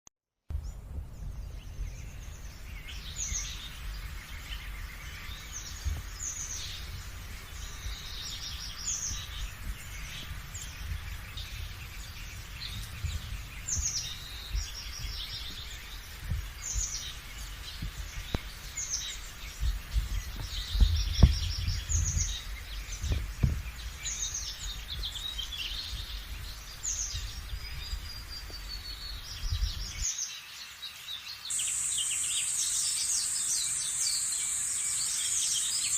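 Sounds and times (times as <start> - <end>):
steady low rumble: 0.5 - 30.0
wild birds chirping: 0.5 - 35.9.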